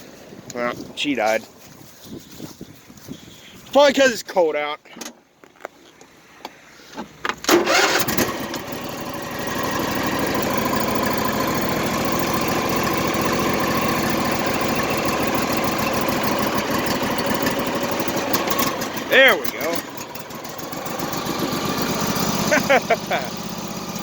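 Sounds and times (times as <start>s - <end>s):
engine running: 7.5s - 24.0s.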